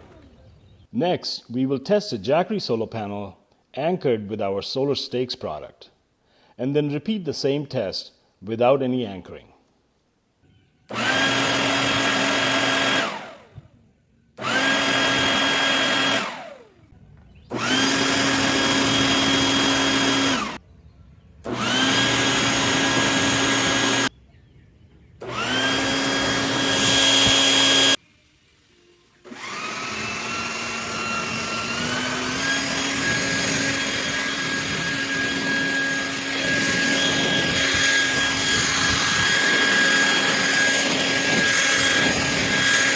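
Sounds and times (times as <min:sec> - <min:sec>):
leaf blower whining: 0:00.0 - 0:00.8, 0:10.9 - 0:13.8, 0:14.4 - 0:20.6, 0:21.4 - 0:24.2, 0:25.2 - 0:42.9.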